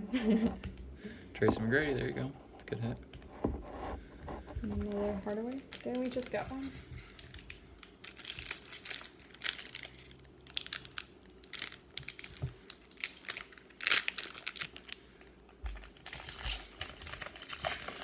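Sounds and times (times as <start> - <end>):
wrapper crinkling and tearing: 4.8 - 18.0.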